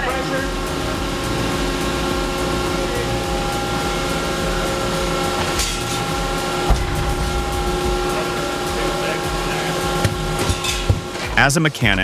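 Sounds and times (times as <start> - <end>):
industrial shredder humming: 0.0 - 11.4
sharp thump: 6.7 - 11.2.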